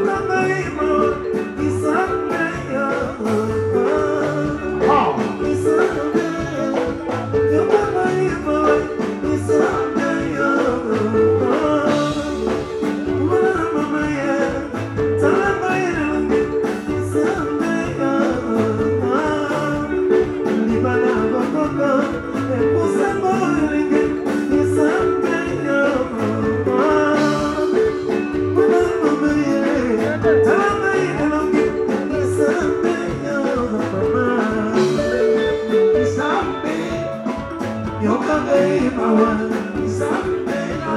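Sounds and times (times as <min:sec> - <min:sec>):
bass and drum beat: 0:00.0 - 0:40.9
guitar lines: 0:00.0 - 0:40.9
live band music: 0:00.0 - 0:40.9
person singing: 0:00.0 - 0:40.9.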